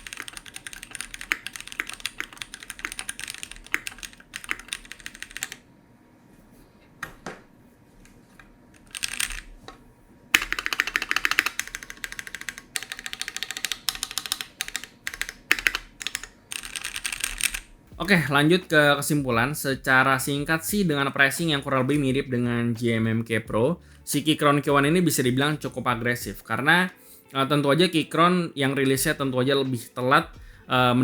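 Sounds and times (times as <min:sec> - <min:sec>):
mechanical keyboard key clacks: 0:00.0 - 0:05.6, 0:10.4 - 0:17.6.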